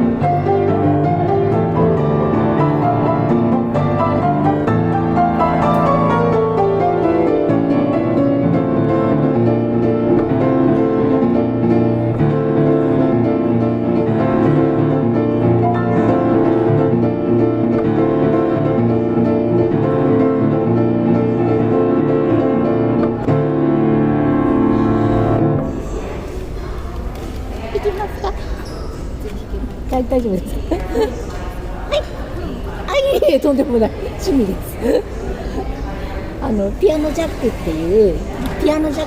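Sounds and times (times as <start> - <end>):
grand piano playing: 0.0 - 26.2.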